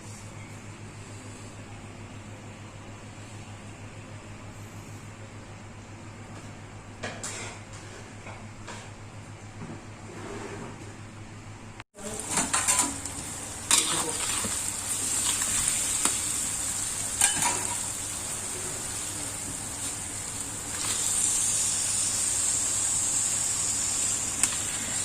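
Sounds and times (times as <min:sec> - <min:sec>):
food sizzling in hot oil: 0:12.0 - 0:25.0.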